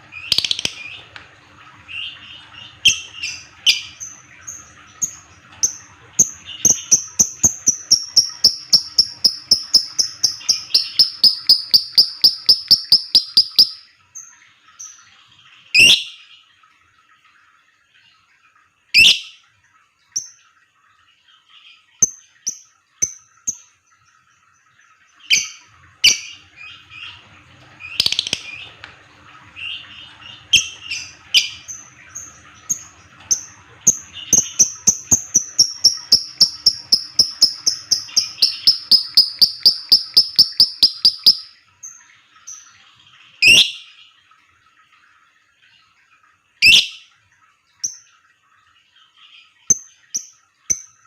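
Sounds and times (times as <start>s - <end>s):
bird rapid repeated chirps: 6.7s - 13.8s, 34.4s - 41.5s.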